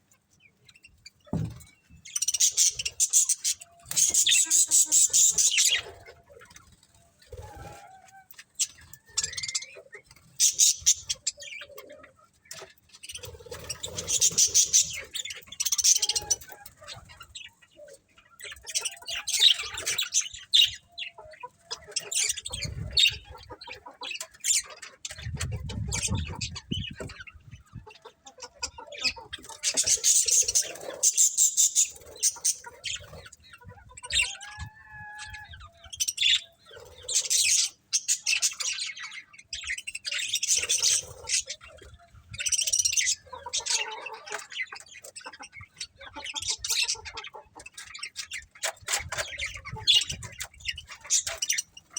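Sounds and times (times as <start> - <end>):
parrots chirping: 2.1 - 6.0, 8.6 - 11.7, 28.8 - 35.2.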